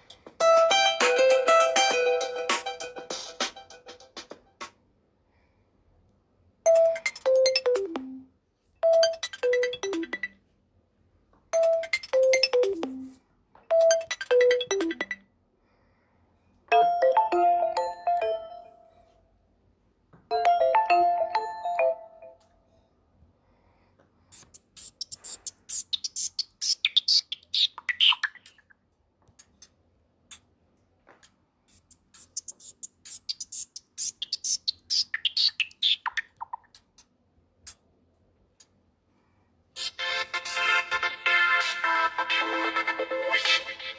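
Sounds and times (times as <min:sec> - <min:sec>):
ringtone falling phrase of notes: 0:00.4 - 0:04.0, 0:06.7 - 0:10.3, 0:16.7 - 0:18.9, 0:20.3 - 0:22.4
chime-like chord ringtone: 0:16.7 - 0:19.1, 0:20.3 - 0:22.4
high bird-like chirps: 0:24.3 - 0:28.7, 0:31.7 - 0:36.9.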